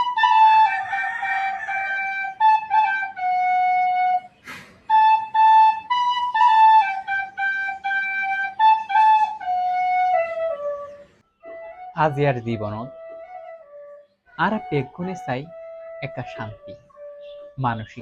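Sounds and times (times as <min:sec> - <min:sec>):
tin whistle melody: 0:00.0 - 0:18.0.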